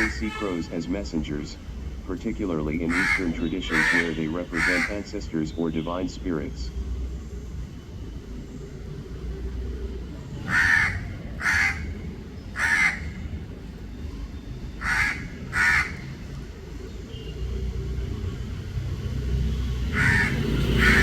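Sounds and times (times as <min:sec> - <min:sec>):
crow cawing: 0:02.8 - 0:05.1, 0:10.3 - 0:13.4, 0:14.7 - 0:16.3, 0:19.9 - 0:21.0.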